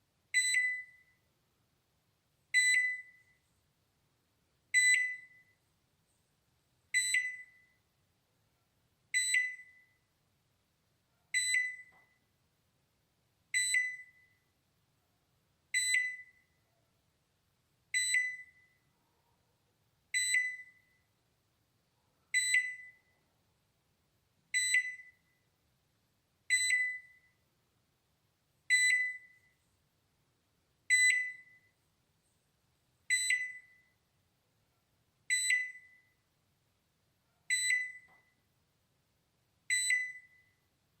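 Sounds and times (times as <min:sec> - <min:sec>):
microwave oven alarm beeps: 0:00.3 - 0:01.2, 0:02.5 - 0:03.4, 0:04.7 - 0:05.6, 0:06.9 - 0:07.8, 0:09.1 - 0:10.0, 0:11.3 - 0:12.2, 0:13.5 - 0:14.4, 0:15.7 - 0:16.6, 0:17.9 - 0:18.9, 0:20.1 - 0:21.1, 0:22.3 - 0:23.1, 0:24.5 - 0:25.4, 0:26.5 - 0:27.4, 0:28.7 - 0:29.6, 0:30.9 - 0:31.8, 0:33.1 - 0:34.0, 0:35.3 - 0:36.2, 0:37.5 - 0:38.4, 0:39.7 - 0:40.6.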